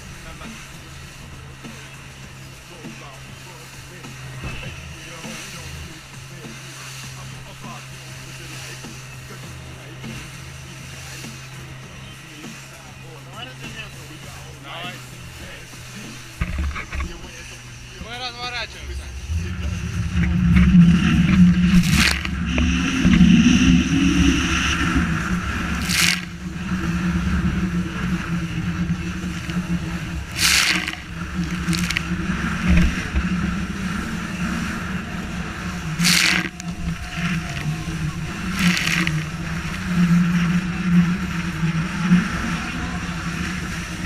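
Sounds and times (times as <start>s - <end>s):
motorboat motor humming: 0.0s - 44.0s
waves splashing against hull: 0.0s - 44.0s
strong wind: 18.0s - 44.0s.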